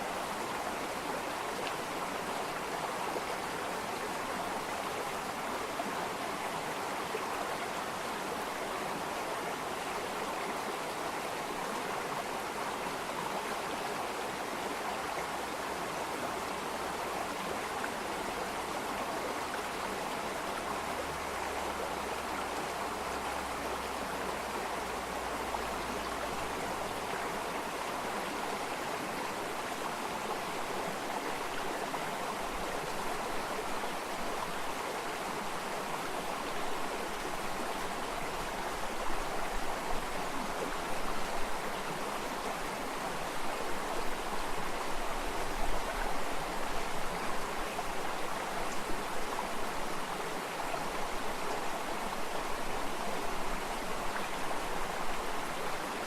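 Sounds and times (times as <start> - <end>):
stream babbling over stones: 0.0 - 56.0.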